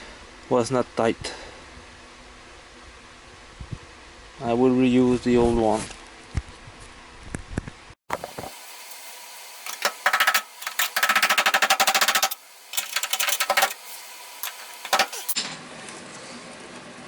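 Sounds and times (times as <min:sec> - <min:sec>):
rapid ratcheting clicks: 0:09.7 - 0:15.4.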